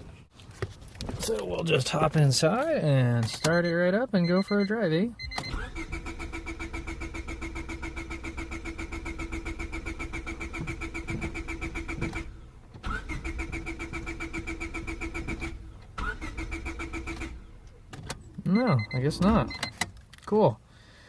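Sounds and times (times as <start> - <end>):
starter cranking car engine: 5.2 - 20.0.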